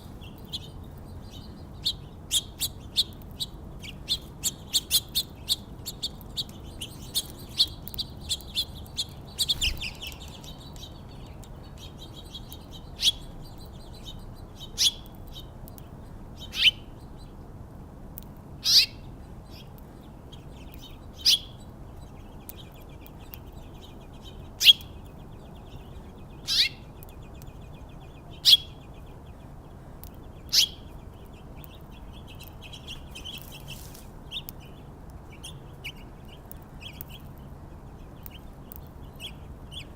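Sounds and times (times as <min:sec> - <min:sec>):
soft continuous twittering: 0:00.0 - 0:16.3.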